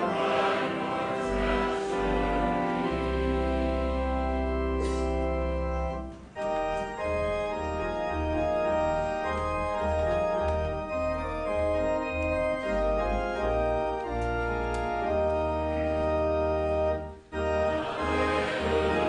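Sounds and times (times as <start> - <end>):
church organ chords: 0.0 - 19.0.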